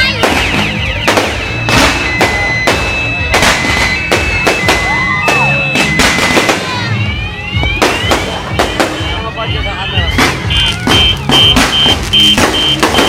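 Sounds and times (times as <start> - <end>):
firework bangs: 0.0 - 13.0
whistling firework shells: 0.0 - 13.0
steady high whistles: 0.4 - 6.5.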